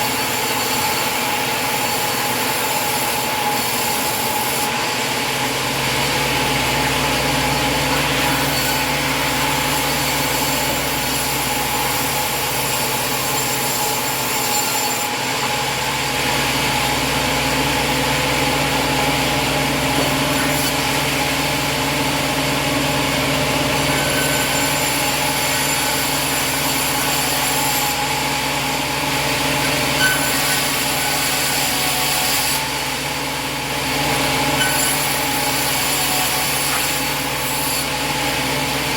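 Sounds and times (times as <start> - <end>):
sawmill engine running: 0.0 - 38.9
band blade cutting log: 6.6 - 16.9, 18.5 - 32.9, 34.4 - 38.3.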